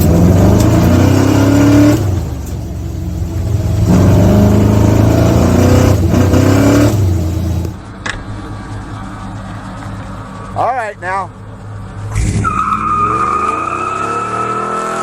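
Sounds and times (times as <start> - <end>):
car engine accelerating hard: 0.0 - 7.8, 12.0 - 15.0.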